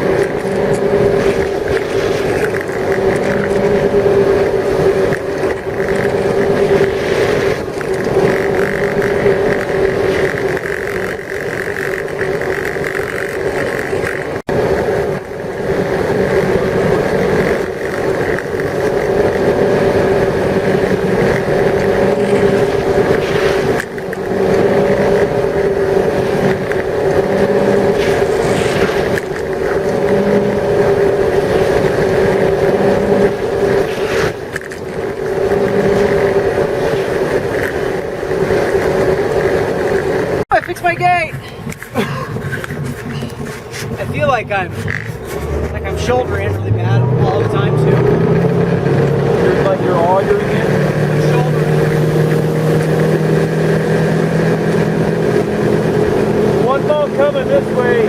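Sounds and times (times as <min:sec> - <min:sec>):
water rushing: 0:00.0 - 0:42.4, 0:43.2 - 0:58.0
boat engine drone: 0:00.0 - 0:58.0
wind: 0:00.0 - 0:58.0.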